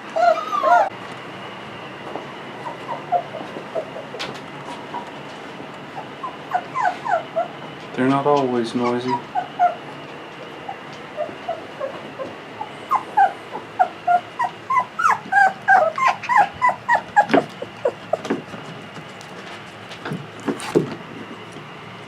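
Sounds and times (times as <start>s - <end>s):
puppies crying: 0.0s - 1.0s, 2.6s - 5.2s, 5.8s - 19.2s.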